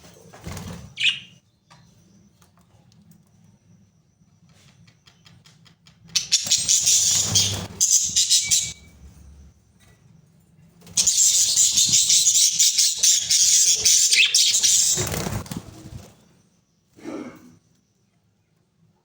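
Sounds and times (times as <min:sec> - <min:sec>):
budgerigars chattering and warbling: 0:01.0 - 0:01.4, 0:06.2 - 0:08.8, 0:11.0 - 0:15.4.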